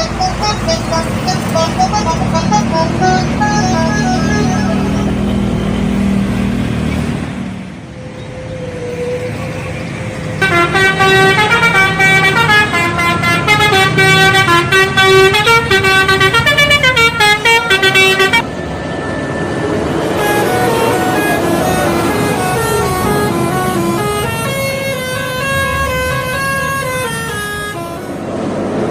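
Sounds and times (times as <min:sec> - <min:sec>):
musical air horn tune: 0:00.0 - 0:05.4, 0:10.4 - 0:18.5, 0:20.0 - 0:28.3
vehicle engine and road noise: 0:00.0 - 0:28.9.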